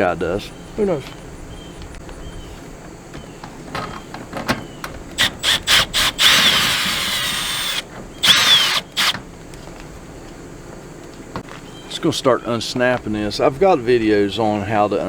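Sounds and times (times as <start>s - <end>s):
cordless drill whining: 5.1s - 9.2s.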